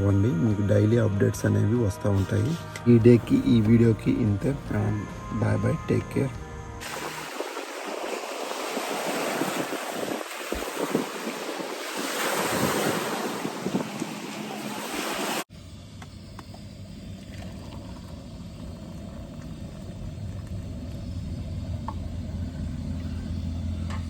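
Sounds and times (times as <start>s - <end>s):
low hum: 0.0s - 8.6s, 15.5s - 24.0s
heavy rain rushing hiss: 6.8s - 15.5s.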